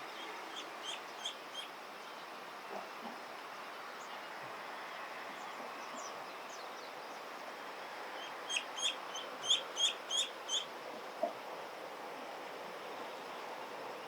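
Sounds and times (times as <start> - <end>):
duckling peeping: 8.2 - 10.7.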